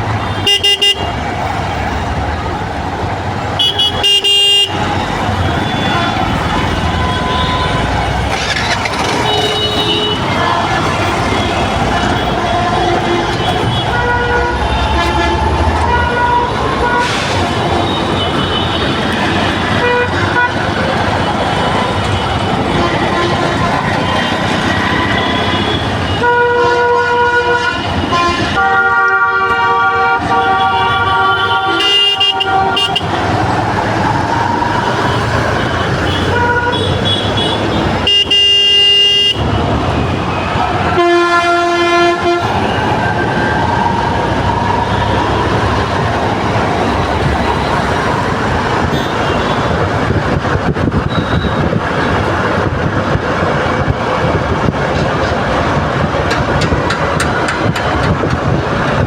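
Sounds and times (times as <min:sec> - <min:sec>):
vehicle horns honking: 0:00.0 - 0:02.2, 0:03.5 - 0:43.6, 0:48.8 - 0:50.1, 0:50.9 - 0:52.2
engines and road noise rumbling: 0:00.0 - 0:59.0.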